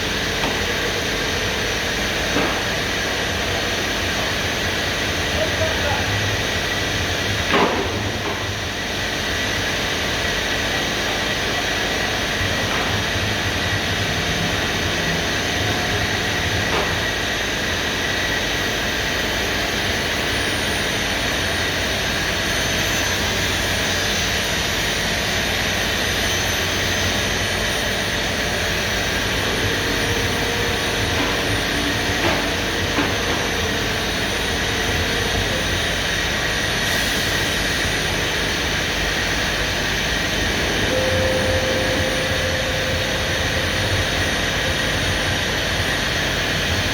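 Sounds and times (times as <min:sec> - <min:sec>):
router with high spindle whine: 0:17.3 - 0:46.9
faint high tone sliding down: 0:40.7 - 0:45.2.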